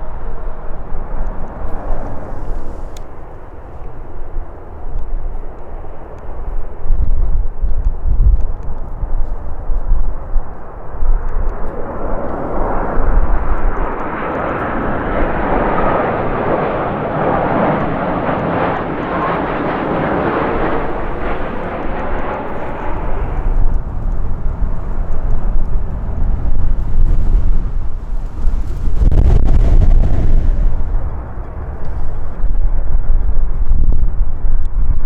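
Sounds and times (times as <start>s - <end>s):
jet airliner engine noise: 0.0s - 35.0s
wind buffeting microphone: 0.0s - 35.0s.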